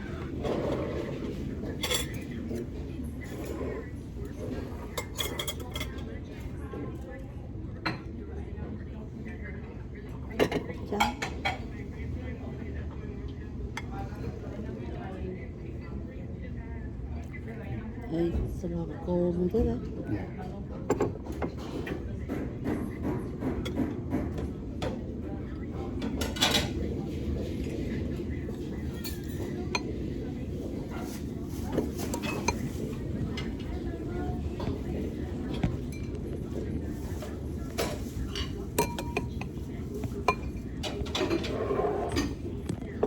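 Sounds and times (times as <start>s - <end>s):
cutlery and dishes clinking: 1.7s - 3.8s, 4.5s - 6.1s, 26.0s - 27.0s, 30.9s - 33.8s, 34.5s - 42.8s.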